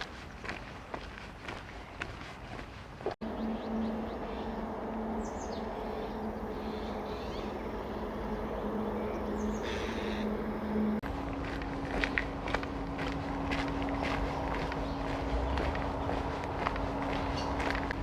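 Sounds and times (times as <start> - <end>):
bird chirps: 3.2 - 11.0
steady low hum: 3.2 - 18.0.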